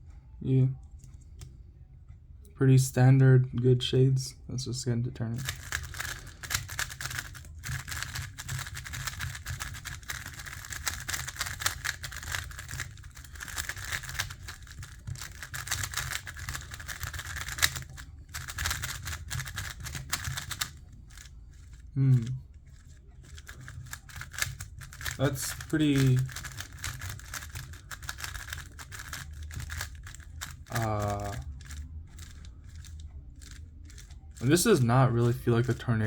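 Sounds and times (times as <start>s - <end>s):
plastic puzzle cube clacking: 5.4s - 35.8s
short vocal sound: 22.0s - 22.4s.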